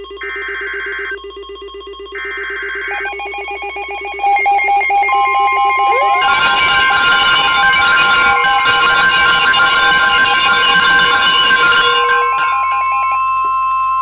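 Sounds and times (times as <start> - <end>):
loud electronic tone: 2.8 - 7.0
pulsing electronic tone: 2.8 - 7.0.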